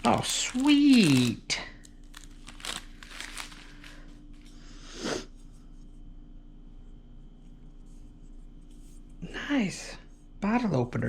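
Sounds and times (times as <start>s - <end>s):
packaging rustling and crinkling: 0.0s - 4.6s
faint steady hum: 0.0s - 11.0s.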